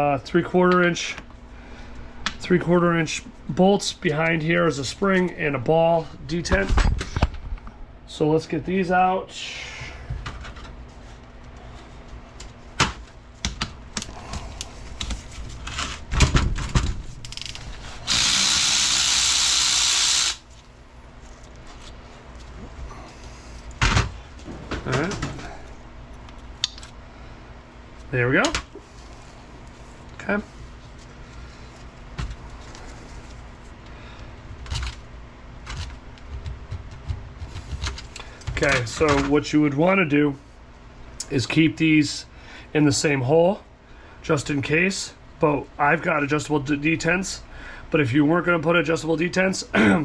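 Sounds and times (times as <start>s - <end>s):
power tool running: 17.8s - 20.4s.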